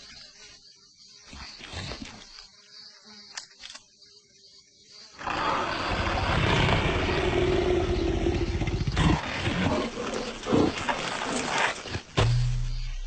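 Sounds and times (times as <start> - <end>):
animal roaring and growling: 5.2 - 11.8.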